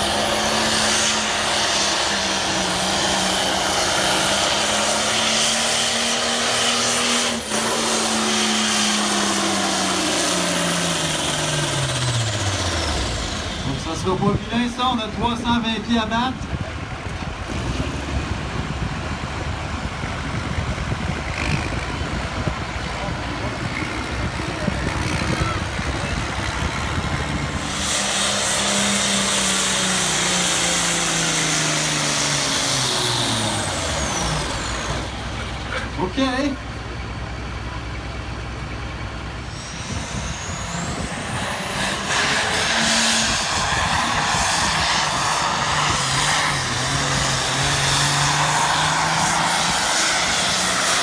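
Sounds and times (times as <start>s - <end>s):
tractor engine running hard: 0.0s - 51.0s
high whistle rising in pitch: 39.5s - 43.4s.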